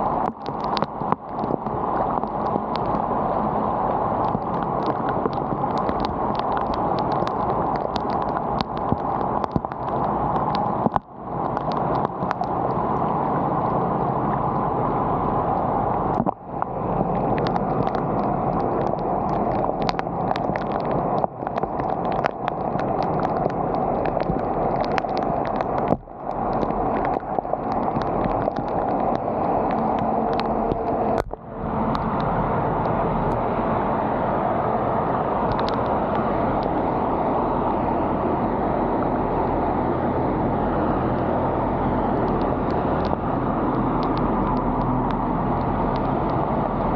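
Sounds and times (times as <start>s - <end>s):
floodwater rushing through culvert: 0.0s - 46.9s
small sharp ticks: 0.2s - 3.1s, 4.2s - 13.8s, 15.6s - 33.4s, 35.4s - 36.8s, 43.8s - 46.4s.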